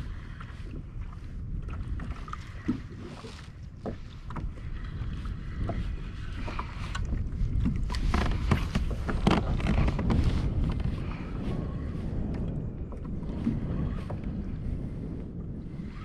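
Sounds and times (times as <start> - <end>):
water splashing against hull: 0.0 - 16.0
wind buffeting microphone: 0.0 - 16.0.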